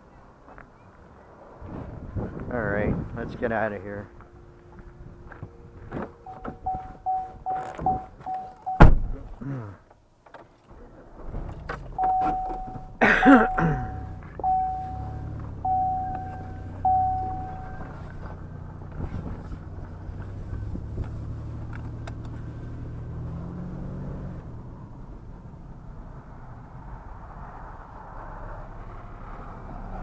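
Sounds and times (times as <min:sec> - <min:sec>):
dashboard warning chime: 0:06.2 - 0:09.0, 0:12.0 - 0:17.9
vehicle engine starting and idling: 0:10.7 - 0:25.8.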